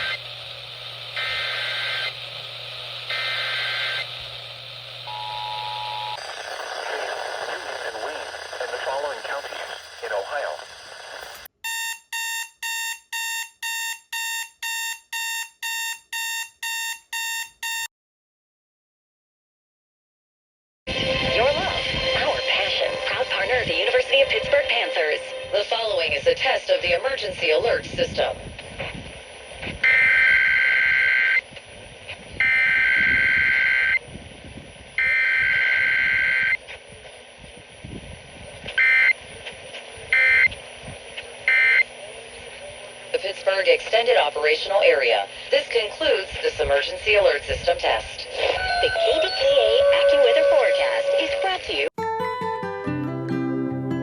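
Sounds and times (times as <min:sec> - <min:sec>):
buzzing digital data tones: 0:01.2 - 0:02.2.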